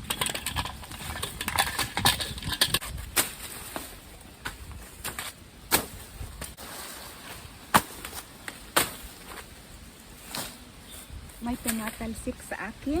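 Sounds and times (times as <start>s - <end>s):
machete chopping brush: 4.4s - 6.9s, 7.7s - 9.4s.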